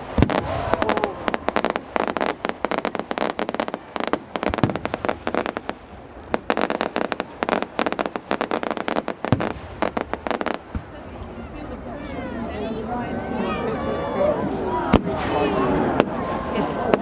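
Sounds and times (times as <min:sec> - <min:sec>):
deep fireworks bangs: 0:00.0 - 0:11.4, 0:14.8 - 0:17.0
fireworks crackling: 0:00.0 - 0:13.6, 0:14.5 - 0:17.0.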